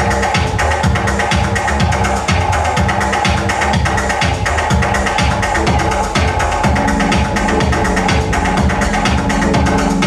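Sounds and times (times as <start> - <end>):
deep kick drum: 0.0 - 10.0
layered synth tones: 3.7 - 10.0.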